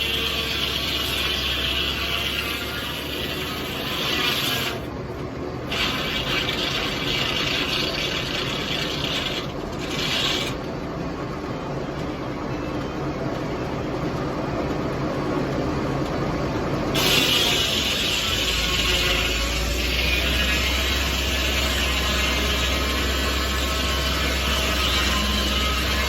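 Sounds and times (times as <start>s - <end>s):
circular saw blade cutting wood: 0.0s - 4.9s, 5.7s - 10.6s, 17.0s - 26.0s
tractor engine running: 0.0s - 26.0s.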